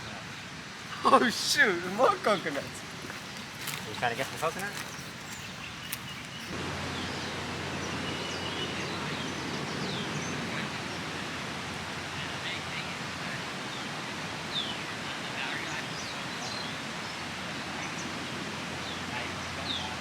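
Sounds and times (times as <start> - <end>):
bird chirps: 2.2 - 10.5.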